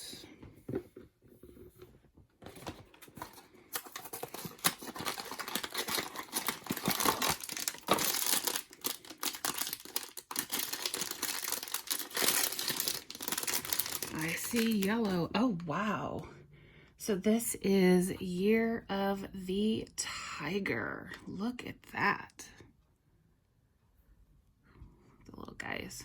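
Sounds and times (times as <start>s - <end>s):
foil bag crinkling and ripping: 2.9s - 15.1s
packaging being torn open: 3.7s - 14.9s.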